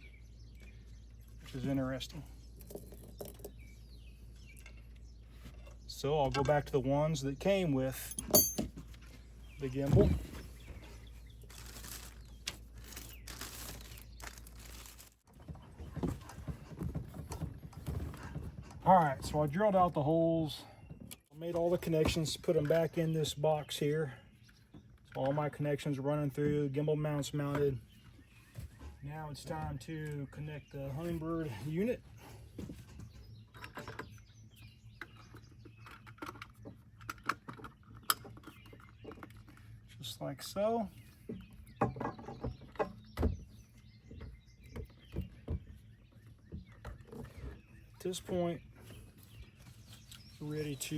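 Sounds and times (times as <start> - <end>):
rustling of hardware: 7.9 - 19.2.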